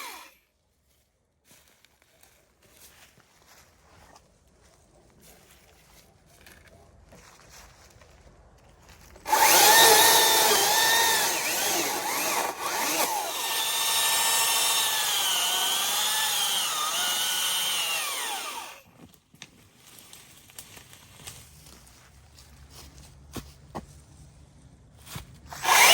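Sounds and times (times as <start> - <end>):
electric chainsaw cutting wood: 0.0 - 0.4, 9.3 - 18.8, 25.5 - 25.9.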